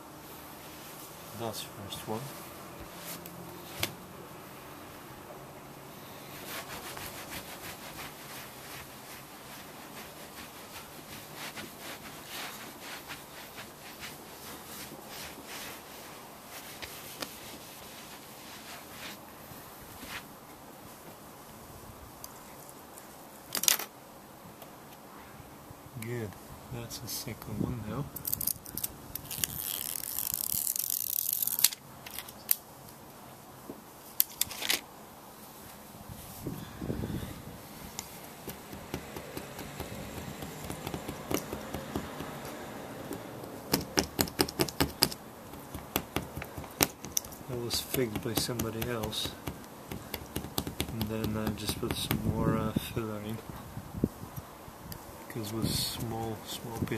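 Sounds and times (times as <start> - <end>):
scraping on windscreen glass: 36.1 - 45.1, 45.7 - 53.3
small hard objects clicking: 43.7 - 45.2.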